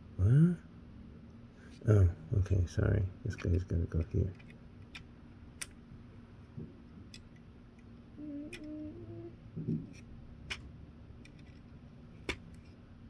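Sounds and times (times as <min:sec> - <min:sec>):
person humming: 0:08.2 - 0:09.9.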